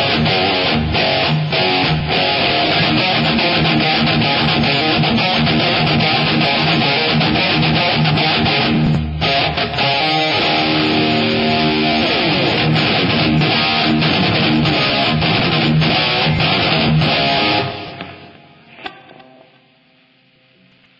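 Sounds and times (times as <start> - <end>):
distorted electric guitar riffs: 0.0 - 20.7.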